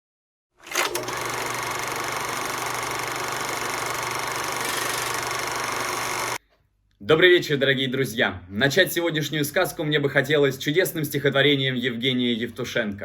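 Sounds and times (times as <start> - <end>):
machine whirring with low hum: 0.7 - 6.4.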